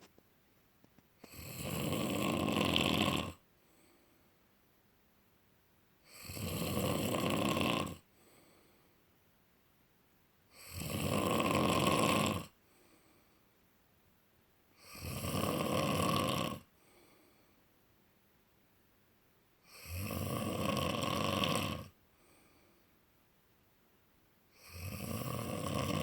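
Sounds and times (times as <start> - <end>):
loud snoring: 1.2 - 3.4, 6.0 - 8.1, 10.5 - 12.6, 14.8 - 16.7, 19.6 - 22.0, 24.5 - 26.0
faint breath: 3.6 - 4.5, 8.1 - 9.2, 12.6 - 13.6, 16.7 - 17.8, 22.0 - 23.1.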